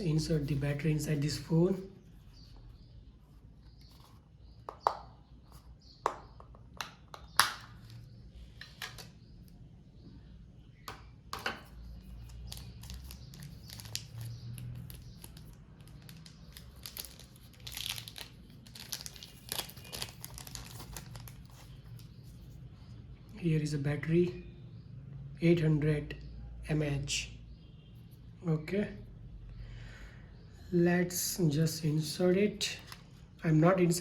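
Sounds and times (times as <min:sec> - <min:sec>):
plastic packaging crinkling and tearing: 0:12.1 - 0:22.2.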